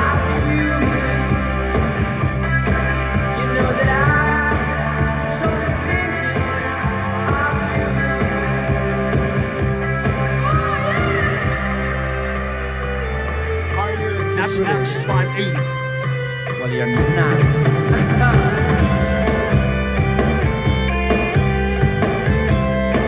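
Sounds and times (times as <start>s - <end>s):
rock music through speakers: 0.0s - 23.0s.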